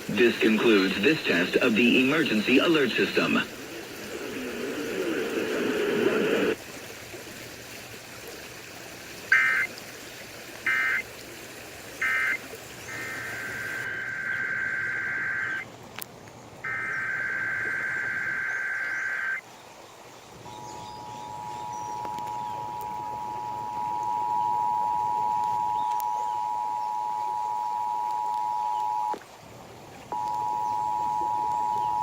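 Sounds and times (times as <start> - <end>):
radio static: 0.0 - 6.6, 9.3 - 9.7, 10.7 - 11.0, 12.0 - 15.6, 16.7 - 19.4, 20.9 - 29.2
warbling digital data tones: 12.0 - 15.6, 16.7 - 19.4, 20.5 - 29.2
steady two-tone attention signal: 20.5 - 29.2, 30.2 - 32.0.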